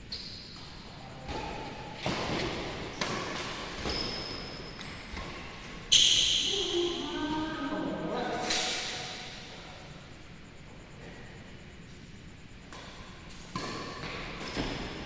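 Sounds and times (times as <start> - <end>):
shoes squealing: 0.0 - 7.7.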